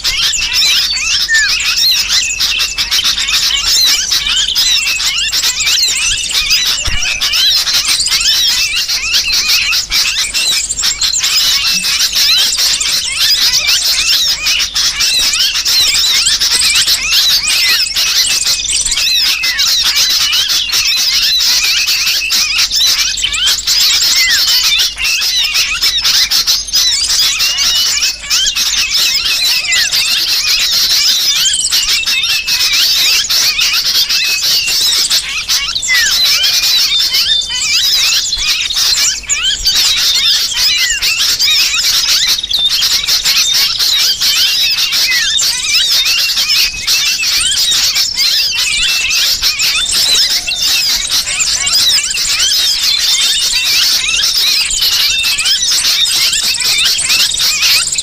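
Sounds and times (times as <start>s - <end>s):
bird distress calls: 0.0s - 58.0s
small birds chirping: 0.0s - 58.0s.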